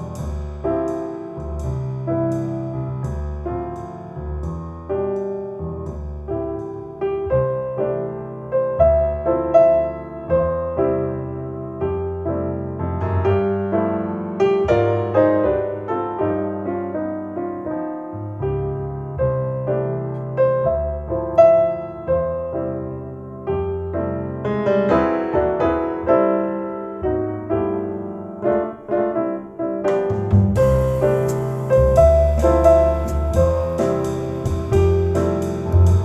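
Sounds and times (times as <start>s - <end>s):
piano music over loudspeakers: 0.0s - 36.0s.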